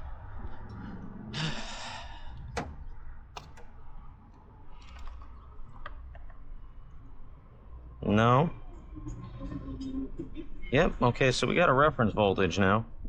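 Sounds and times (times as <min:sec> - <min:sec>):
breathy exhale: 0:00.8 - 0:02.5
sharp clicks and taps: 0:02.6 - 0:03.8.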